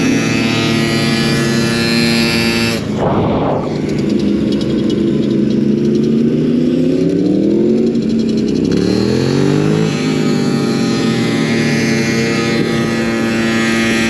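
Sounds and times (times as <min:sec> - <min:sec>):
motorcycle engine revving: 0:00.0 - 0:14.0
short burst of noise: 0:02.8 - 0:04.2.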